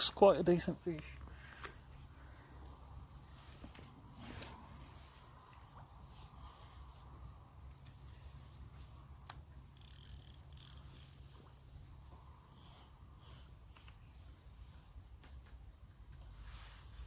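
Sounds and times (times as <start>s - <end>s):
soft rustles: 1.0s - 9.1s, 14.2s - 17.0s.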